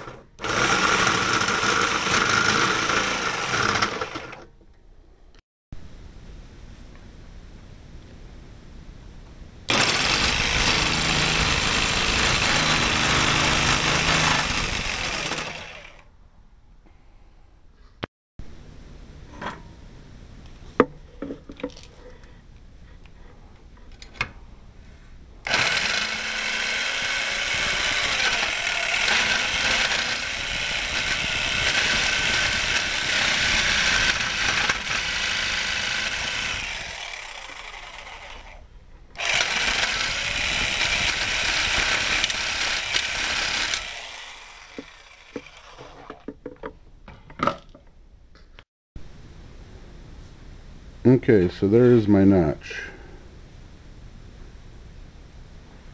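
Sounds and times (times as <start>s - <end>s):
jigsaw cutting metal: 0.0s - 4.5s, 9.7s - 16.0s, 25.5s - 38.6s, 39.2s - 46.2s.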